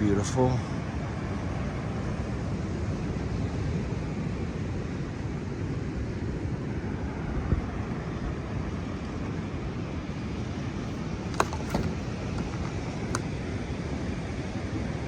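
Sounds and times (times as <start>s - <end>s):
ocean surf rumble: 0.0s - 15.0s
wind on microphone: 6.0s - 10.1s.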